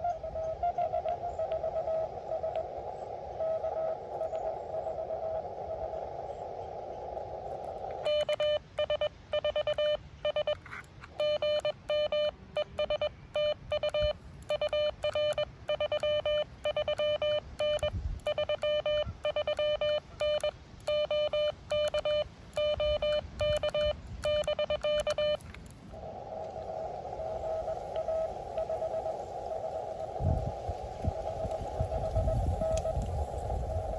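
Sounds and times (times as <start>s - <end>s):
radio receiver hiss: 1.1s - 33.9s
morse code beeps: 8.0s - 25.5s, 27.5s - 29.1s.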